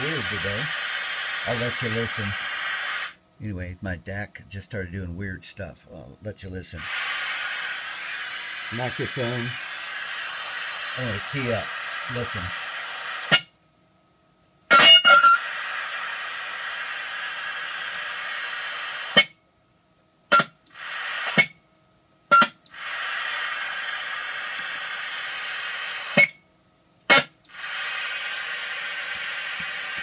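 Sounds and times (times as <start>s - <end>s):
radio squeal: 0.0s - 3.2s, 6.4s - 13.5s, 14.7s - 19.3s, 20.3s - 21.5s, 22.3s - 26.4s, 27.1s - 30.0s
radio static hiss: 0.0s - 13.5s, 14.7s - 19.4s, 20.3s - 21.6s, 22.3s - 26.3s, 27.1s - 30.0s.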